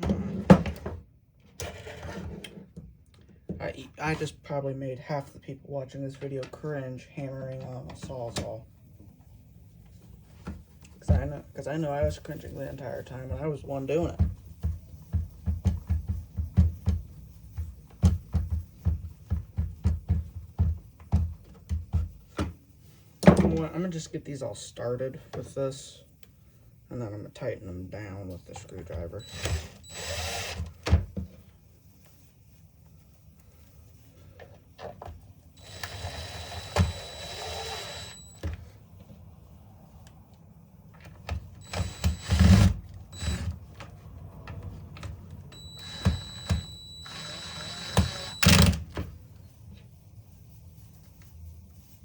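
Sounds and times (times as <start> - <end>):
cordless drill motor whine: 29.2 - 30.7, 35.6 - 38.6, 41.6 - 43.6, 45.5 - 48.9.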